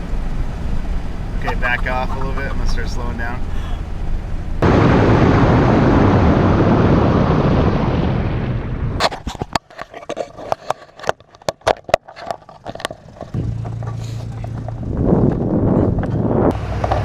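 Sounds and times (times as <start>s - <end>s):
wind buffeting microphone: 0.0s - 9.6s, 13.3s - 16.6s.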